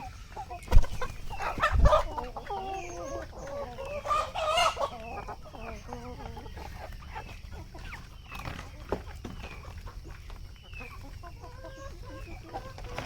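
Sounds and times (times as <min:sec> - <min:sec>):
chickens clucking: 0:00.0 - 0:13.0
dull thump: 0:00.7 - 0:01.1.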